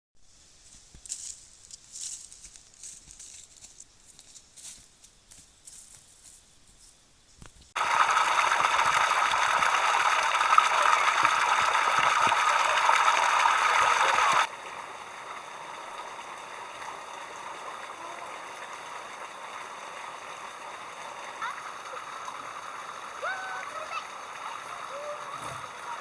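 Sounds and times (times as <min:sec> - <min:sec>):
stream water rushing: 0:07.8 - 0:26.0.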